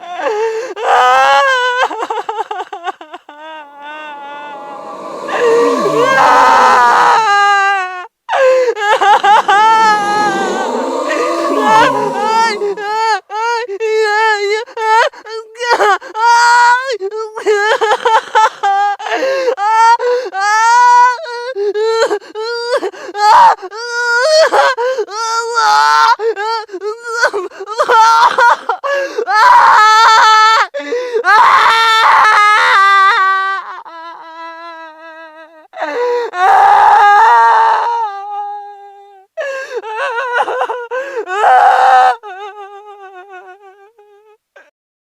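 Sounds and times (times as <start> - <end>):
high-pitched wavering voice: 4.3 - 7.1, 9.5 - 12.8
loud rough outbursts: 4.3 - 7.2, 9.4 - 12.8.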